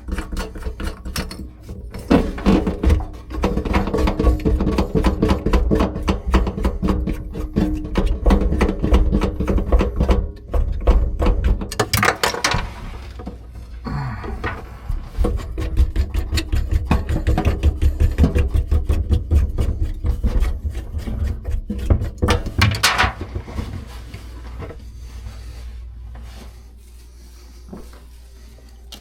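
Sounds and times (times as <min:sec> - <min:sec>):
rapid scraping strokes: 0:14.8 - 0:22.5.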